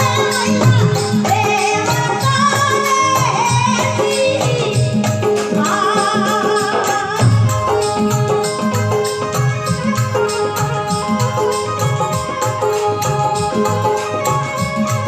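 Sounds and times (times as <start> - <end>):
steady drum beat: 0.0 - 15.0
wavering melody line: 6.7 - 15.0.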